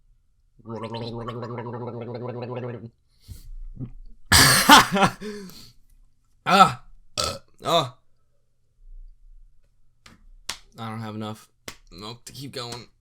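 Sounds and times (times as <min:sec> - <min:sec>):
harsh throaty burst of breath: 0:04.3 - 0:05.6
man gargling: 0:04.3 - 0:05.6, 0:06.5 - 0:07.9.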